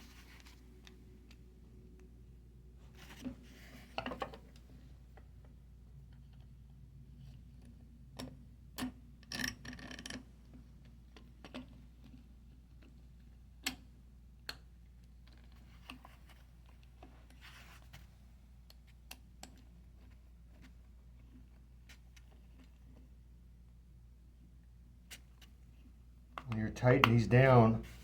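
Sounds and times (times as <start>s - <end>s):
faint steady hum: 0.0s - 28.0s
small parts clicking and knocking: 8.2s - 12.2s.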